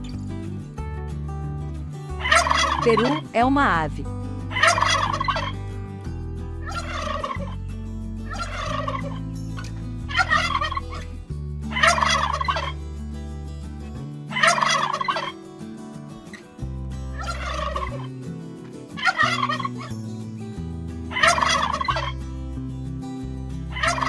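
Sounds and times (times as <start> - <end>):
turkey gobbling: 2.2 - 3.2, 4.5 - 5.6, 6.6 - 7.6, 8.3 - 9.2, 10.1 - 11.0, 11.7 - 12.8, 14.3 - 15.3, 17.2 - 18.1, 19.0 - 19.9, 21.1 - 22.2, 23.7 - 24.0.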